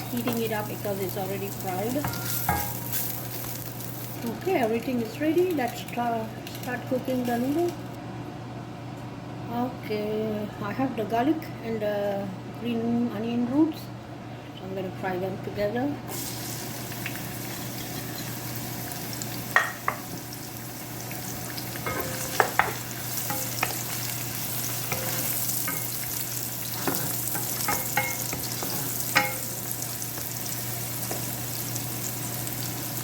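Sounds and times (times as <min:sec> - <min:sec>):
garlic sizzling in hot oil: 0:00.0 - 0:07.8, 0:16.1 - 0:33.0.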